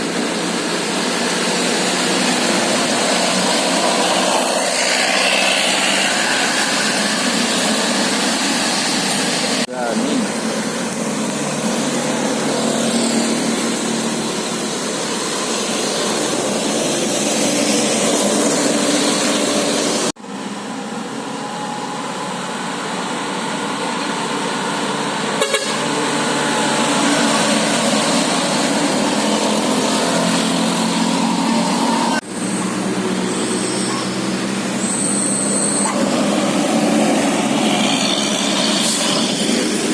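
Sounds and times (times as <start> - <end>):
loud rush of noise: 0.0 - 39.9
bus musical air horn: 25.3 - 27.3.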